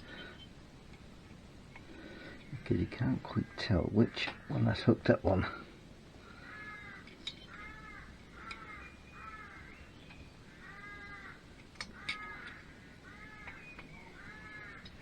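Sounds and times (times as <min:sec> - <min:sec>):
crow cawing: 0:03.1 - 0:05.6, 0:06.2 - 0:15.0.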